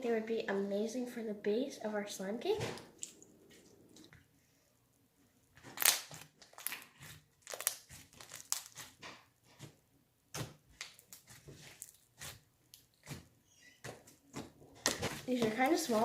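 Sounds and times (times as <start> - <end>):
slime crackling and popping: 5.6 - 9.1, 10.3 - 13.2, 14.3 - 16.0.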